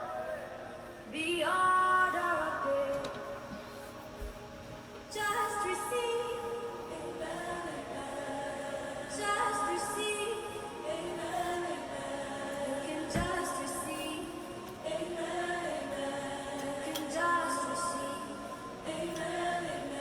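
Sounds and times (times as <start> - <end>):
voices singing long held notes: 5.1 - 20.0.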